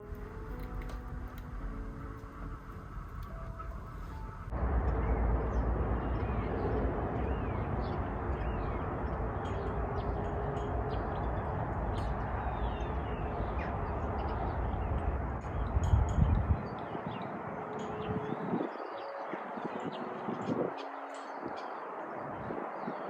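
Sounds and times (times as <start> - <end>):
steady low rumble: 0.0 - 18.1
soft steady tones: 0.0 - 22.8
birds chirping: 0.0 - 23.0.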